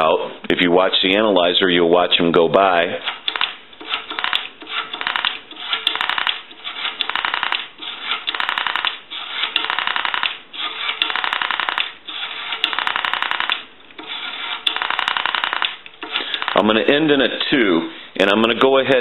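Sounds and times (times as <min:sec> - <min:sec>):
rotary dial clicks: 0:12.6 - 0:14.0.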